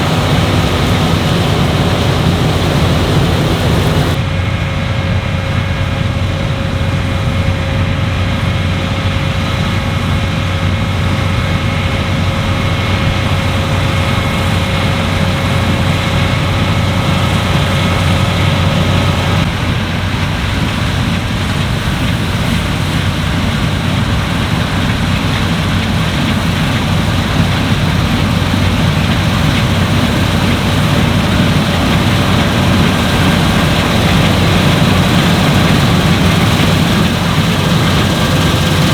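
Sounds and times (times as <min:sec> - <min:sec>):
thin mechanical whine: 0:00.0 - 0:04.2
combine harvester drone: 0:00.0 - 0:38.9.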